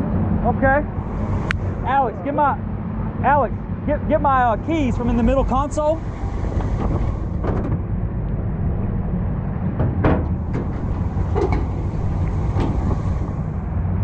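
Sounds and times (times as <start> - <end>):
vehicle engine rumbling: 0.0 - 14.0
sharp clicks and knocks: 6.4 - 8.4, 9.8 - 13.2.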